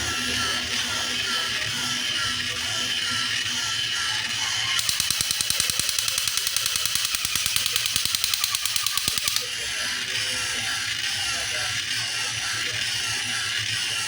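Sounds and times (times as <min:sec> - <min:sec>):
quiet background music: 0:00.0 - 0:13.8
rapid mechanical clicks with hiss: 0:04.8 - 0:09.5.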